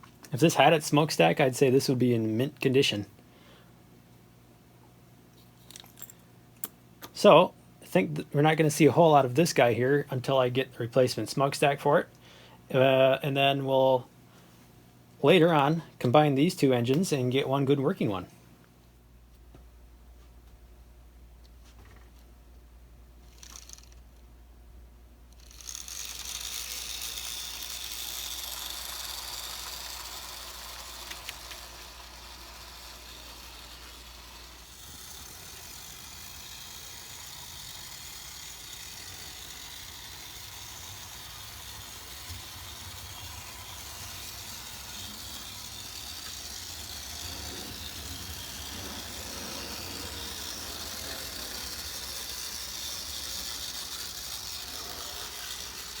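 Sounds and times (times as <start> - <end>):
model locomotive motor whirring: 23.2 - 24.3, 25.3 - 56.0.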